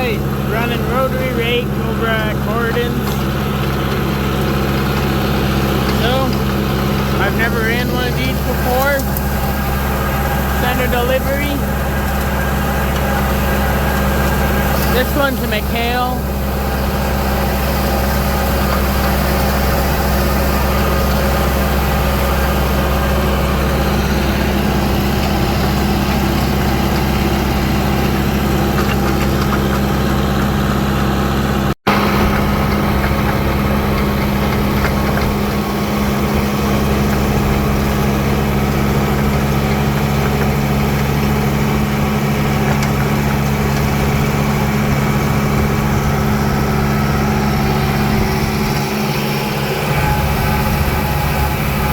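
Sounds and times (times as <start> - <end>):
tractor engine running: 0.0 - 51.9.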